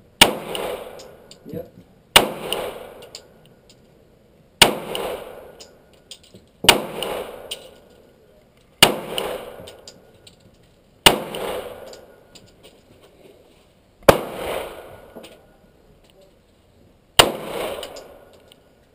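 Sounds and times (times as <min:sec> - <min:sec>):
pistol shots with echo: 0:00.2 - 0:01.4, 0:02.2 - 0:03.3, 0:04.6 - 0:05.7, 0:06.6 - 0:07.8, 0:08.8 - 0:09.9, 0:11.0 - 0:12.2, 0:14.0 - 0:15.2, 0:17.2 - 0:18.4.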